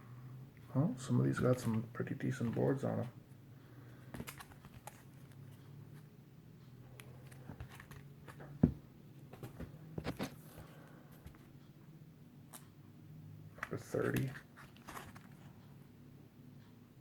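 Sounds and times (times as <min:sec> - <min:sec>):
plastic crinkles and taps: 0:04.1 - 0:05.4.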